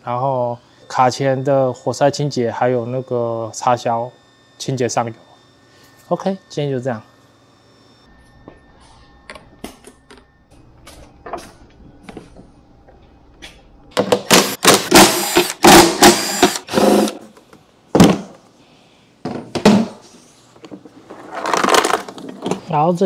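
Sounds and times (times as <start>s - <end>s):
power driver bursts: 14.2s - 17.2s.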